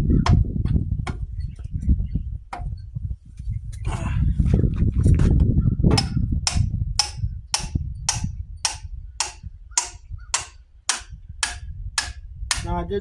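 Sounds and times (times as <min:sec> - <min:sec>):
low rumble: 0:00.0 - 0:10.4
hammer tapping metal pin: 0:06.0 - 0:12.7.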